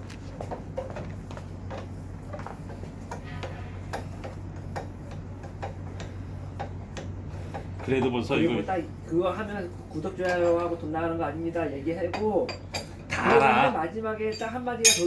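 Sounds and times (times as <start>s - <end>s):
steady low hum: 0.0s - 15.0s
hand tools tapping on metal: 0.4s - 8.2s, 10.2s - 10.8s, 12.1s - 13.0s, 14.3s - 15.0s.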